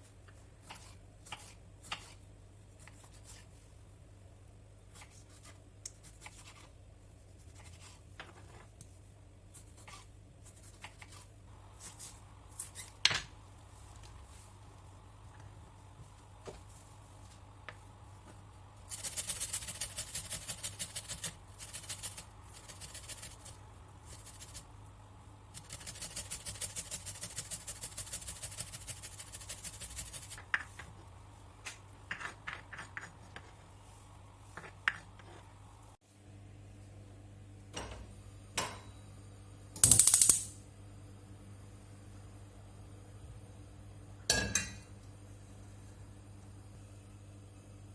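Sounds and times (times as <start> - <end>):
quick even kitchen strokes: 18.9 - 24.7, 25.6 - 30.4.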